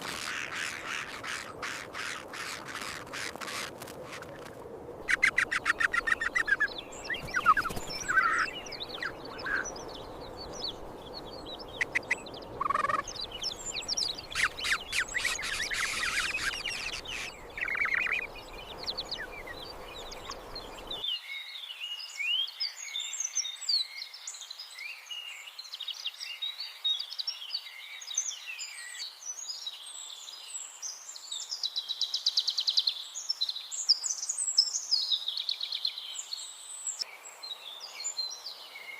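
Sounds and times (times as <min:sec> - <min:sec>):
harsh pulsed bird squawks: 0:00.0 - 0:04.4, 0:05.0 - 0:09.7, 0:11.7 - 0:13.2, 0:13.9 - 0:18.3
background noise: 0:00.0 - 0:38.9
high-pitched bird chirps: 0:05.1 - 0:09.8, 0:11.6 - 0:18.3.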